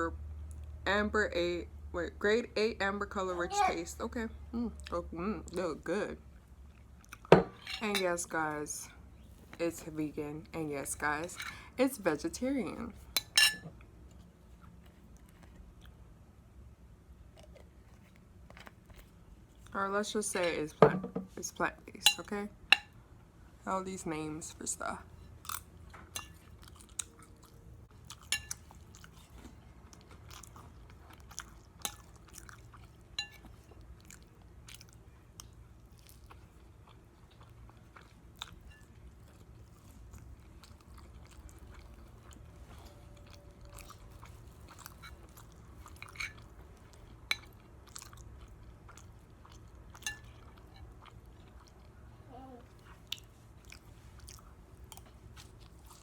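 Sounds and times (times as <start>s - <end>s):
low steady hum: 0.0s - 56.0s
quiet chewing: 13.8s - 16.1s, 17.3s - 19.8s, 25.1s - 56.0s.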